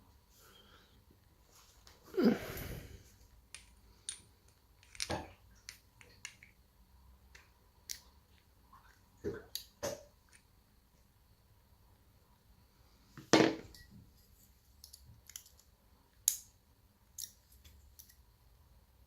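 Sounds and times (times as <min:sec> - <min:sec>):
lock picking clicks and taps: 0:03.5 - 0:06.5, 0:14.8 - 0:16.5.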